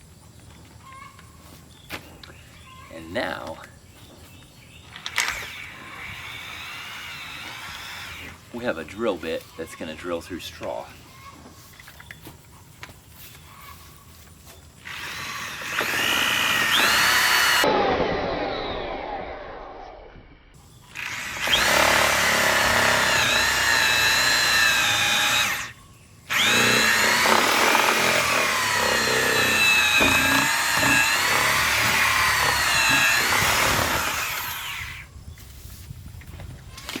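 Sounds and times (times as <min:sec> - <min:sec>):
drill whining under load: 0:05.1 - 0:08.4, 0:14.8 - 0:18.8, 0:21.0 - 0:35.1.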